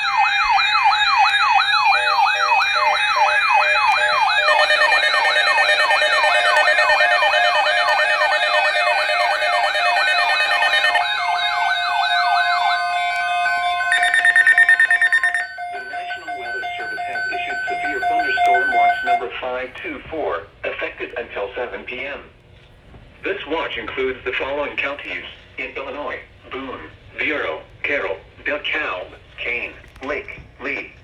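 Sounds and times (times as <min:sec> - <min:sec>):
electronic siren yelping: 0:00.0 - 0:19.2
second siren tones: 0:00.0 - 0:19.2.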